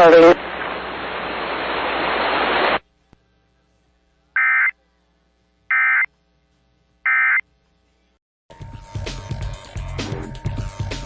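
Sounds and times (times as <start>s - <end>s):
radio hiss: 0.0s - 2.8s.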